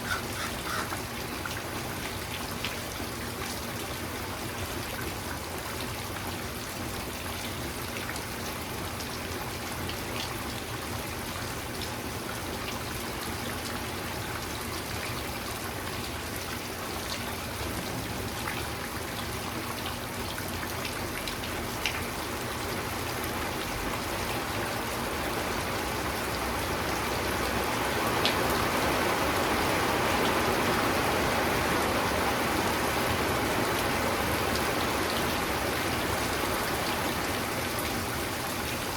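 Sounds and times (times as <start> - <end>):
steady rainfall: 0.0 - 38.9
close raindrop ticks: 19.8 - 22.1.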